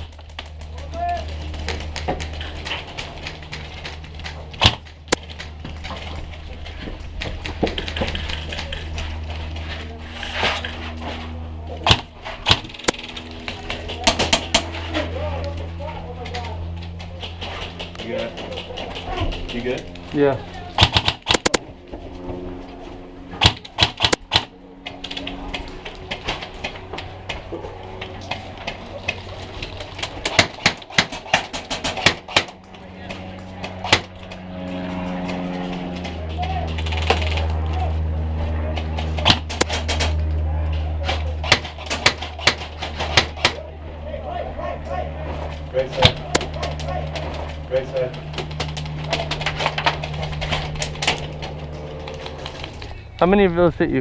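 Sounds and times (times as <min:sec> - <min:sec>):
steady low hum: 0:00.0 - 0:54.0
airsoft guns firing: 0:04.6 - 0:05.6, 0:11.8 - 0:14.6, 0:20.8 - 0:21.7, 0:23.4 - 0:24.6, 0:30.2 - 0:32.6, 0:39.2 - 0:40.1.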